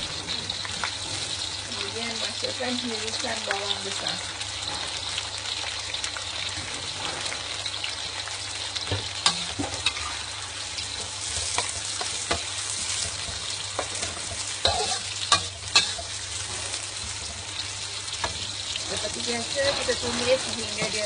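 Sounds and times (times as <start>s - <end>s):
onions sizzling in hot oil: 0.0s - 21.0s
spatula scraping a pan: 6.7s - 8.0s, 9.1s - 21.0s.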